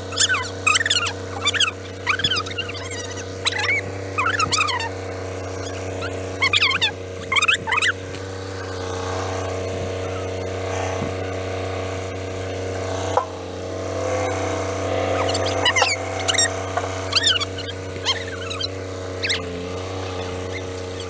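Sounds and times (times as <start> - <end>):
engine running steadily: 0.0 - 21.0
short high-pitched calls: 0.1 - 4.9, 5.5 - 8.0, 14.2 - 21.0.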